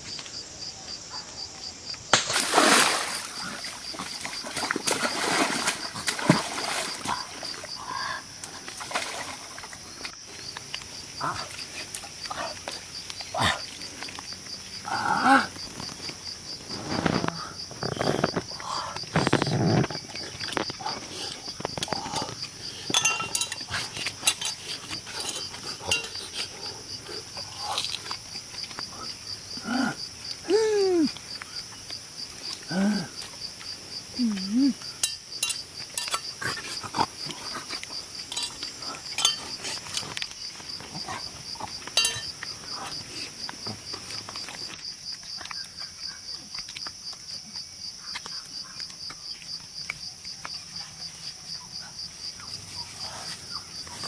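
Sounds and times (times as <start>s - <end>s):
crickets chirring: 0.0s - 54.0s.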